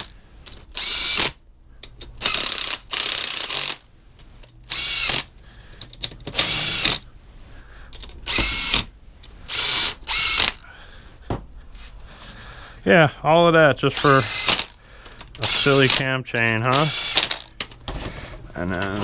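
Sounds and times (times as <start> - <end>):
ratchet wrench clicking: 2.2 - 3.8.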